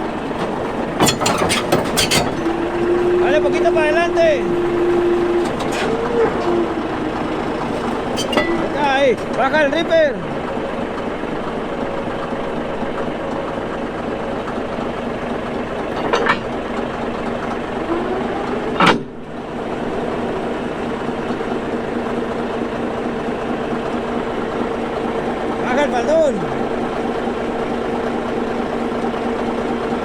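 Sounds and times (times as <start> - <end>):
large diesel engine running: 0.0 - 30.0
brief squeak: 1.0 - 3.2, 5.0 - 6.8, 7.8 - 8.8.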